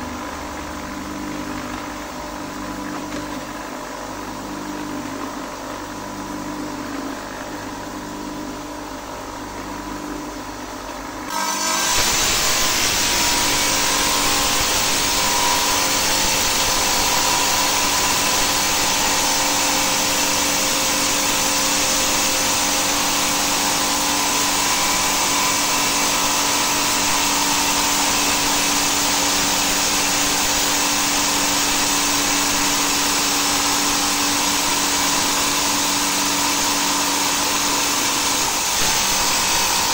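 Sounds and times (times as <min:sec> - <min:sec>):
saw motor humming: 0:11.3 - 0:39.9.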